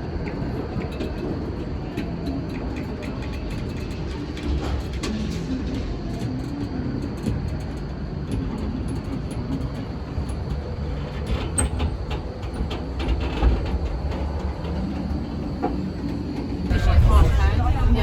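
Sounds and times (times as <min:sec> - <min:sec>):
moving vehicle rumble: 0:16.7 - 0:18.0.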